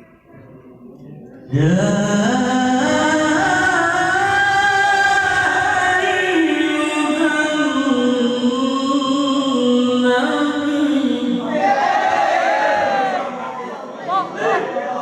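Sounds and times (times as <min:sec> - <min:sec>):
person reciting melodically: 0:01.0 - 0:12.1.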